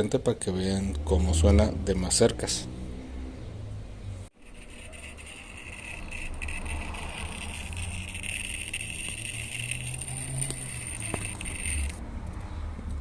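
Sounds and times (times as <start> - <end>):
high-pitched electronic whine: 4.4 - 12.0.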